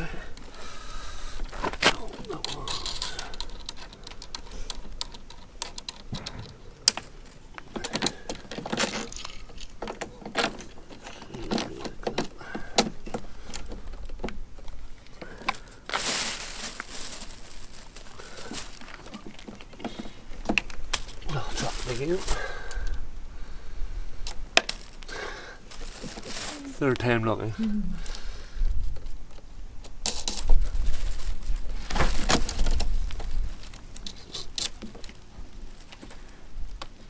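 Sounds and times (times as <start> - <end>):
short rustle: 14.7 - 22.7, 25.6 - 27.2.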